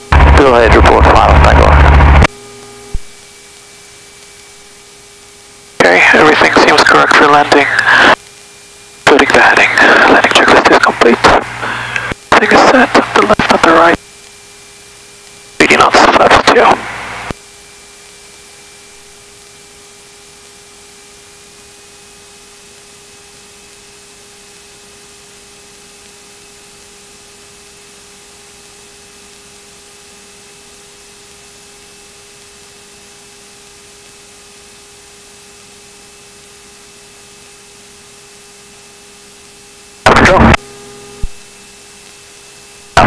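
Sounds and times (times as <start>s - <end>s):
faint steady whine: 0.0s - 43.0s
intercom audio hiss: 0.1s - 2.3s, 5.8s - 8.2s, 9.0s - 14.0s, 15.6s - 17.4s, 40.0s - 41.6s, 42.8s - 43.0s.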